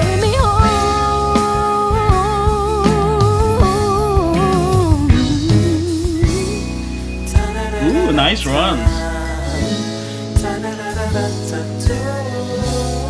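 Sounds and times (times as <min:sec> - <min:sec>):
band with guitar and drums: 0:00.0 - 0:13.0
person singing with vibrato: 0:07.4 - 0:09.6.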